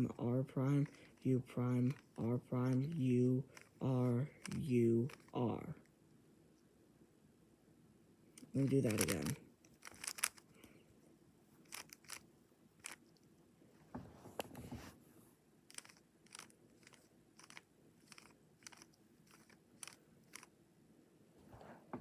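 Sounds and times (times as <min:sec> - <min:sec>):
puzzle cube plastic clicks: 0:00.7 - 0:01.2, 0:01.8 - 0:05.4, 0:08.4 - 0:10.8, 0:11.6 - 0:12.2, 0:12.8 - 0:13.2, 0:15.7 - 0:20.5.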